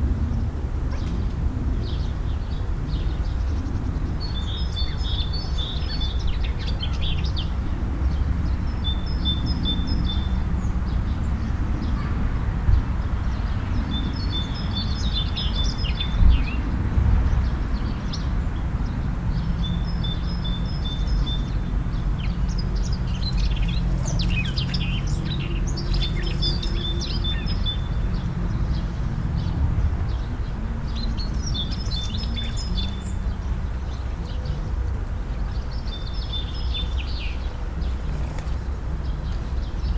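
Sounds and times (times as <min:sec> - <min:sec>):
steady low rumble: 0:21.7 - 0:35.8
songbird chattering: 0:22.2 - 0:27.9, 0:30.6 - 0:33.6.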